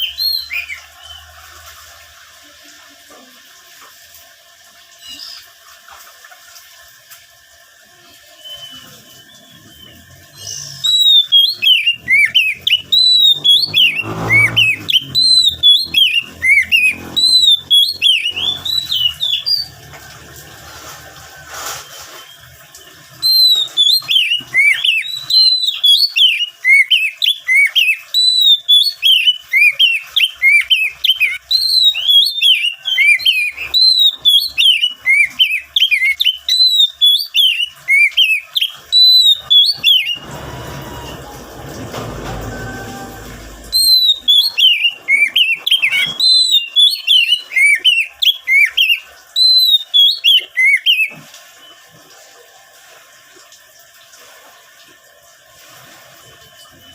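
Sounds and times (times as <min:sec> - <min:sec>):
bird singing whistled notes: 0:00.0 - 0:01.2, 0:08.4 - 0:19.7, 0:23.2 - 0:40.3, 0:42.7 - 0:51.8.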